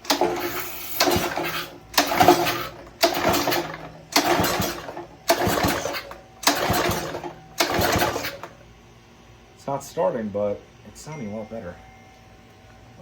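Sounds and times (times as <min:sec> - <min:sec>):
small engine pull-start cranking: 0:00.0 - 0:08.6.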